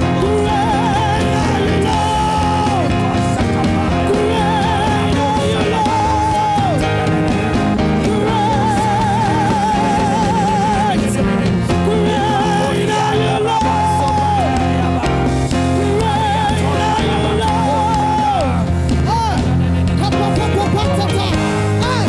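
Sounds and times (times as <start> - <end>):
worship band music: 0.0 - 22.0.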